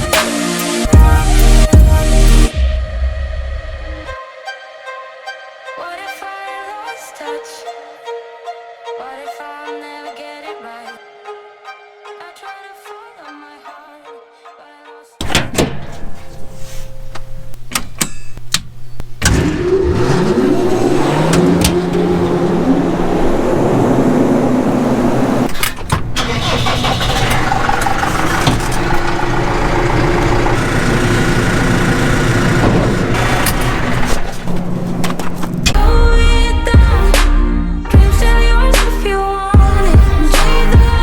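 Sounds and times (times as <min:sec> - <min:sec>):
diesel engine revving: 0:19.2 - 0:38.8
engine clicking: 0:25.5 - 0:35.8.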